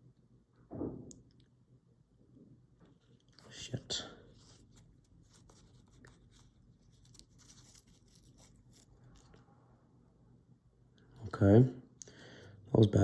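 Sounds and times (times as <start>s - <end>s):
hands handling small objects: 2.8s - 9.5s.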